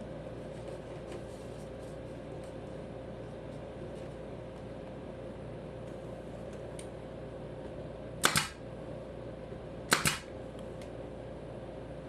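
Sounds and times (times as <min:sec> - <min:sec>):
nail gun firing: 0:08.2 - 0:08.6, 0:09.9 - 0:10.3.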